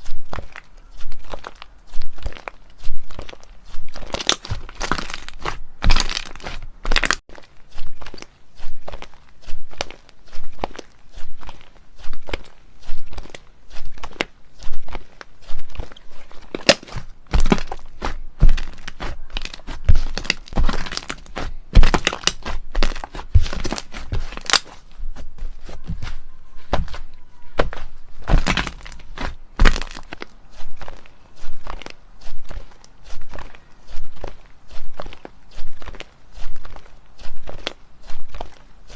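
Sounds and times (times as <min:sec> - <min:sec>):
slime popping and crackling: 0:00.3 - 0:07.2, 0:14.0 - 0:24.8, 0:27.6 - 0:38.6.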